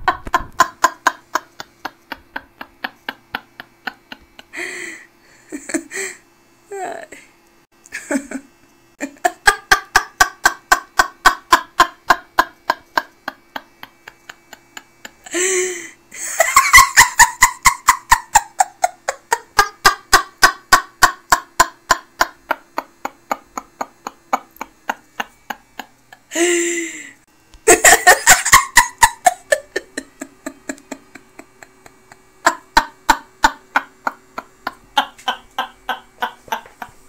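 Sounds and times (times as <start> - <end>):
woman belly laughing: 0.0 - 6.2, 7.9 - 37.0
gasping in-breath: 4.5 - 6.2, 15.3 - 16.0, 26.3 - 27.2.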